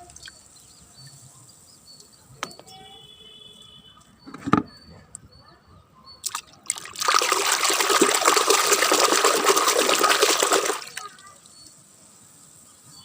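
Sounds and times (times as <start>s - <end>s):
water running: 6.7s - 11.2s.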